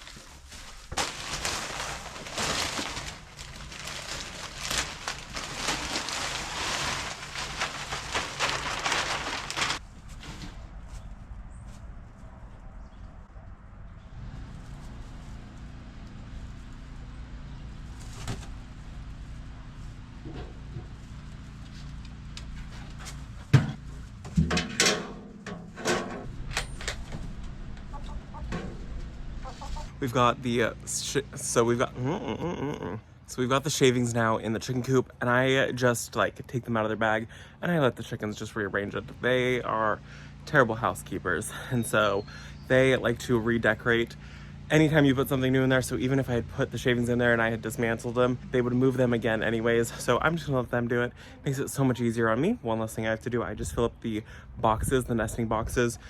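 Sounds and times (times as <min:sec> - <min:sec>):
wood shavings rustling: 0:00.0 - 0:11.1.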